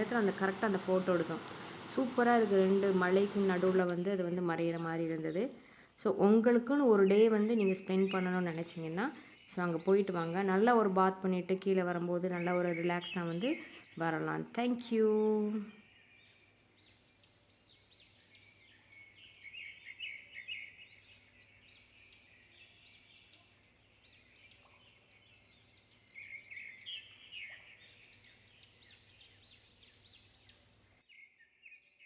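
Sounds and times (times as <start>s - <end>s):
steady low hum: 0.0s - 4.2s
small birds chirping: 6.9s - 32.0s.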